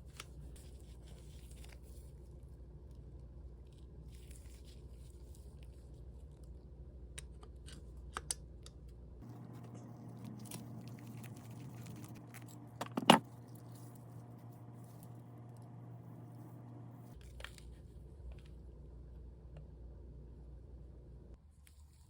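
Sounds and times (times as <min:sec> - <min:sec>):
steady low hum: 0:08.8 - 0:21.4.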